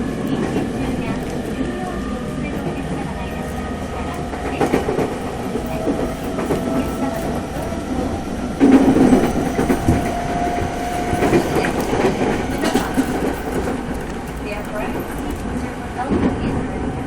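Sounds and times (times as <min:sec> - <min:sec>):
wheels clacking on rails: 0:00.0 - 0:16.3
train running noise: 0:00.0 - 0:17.0.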